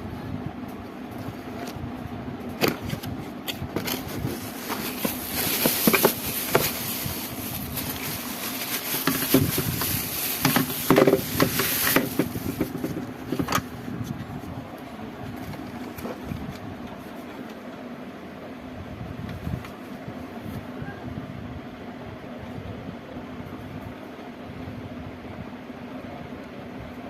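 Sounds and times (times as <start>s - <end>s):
steady low hum: 0.0s - 27.0s
handling clicks and knocks: 2.5s - 7.0s, 8.0s - 13.7s
crinkly packaging rustling: 2.6s - 13.7s.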